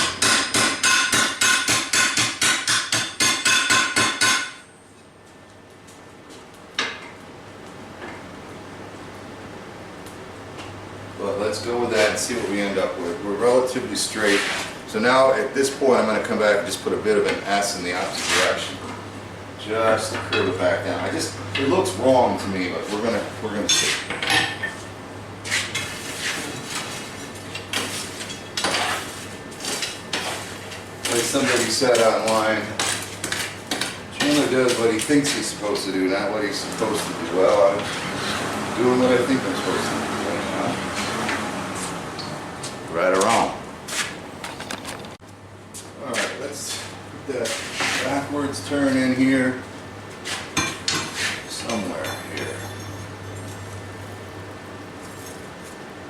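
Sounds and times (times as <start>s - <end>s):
hammer striking steel on anvil: 0.0s - 4.7s.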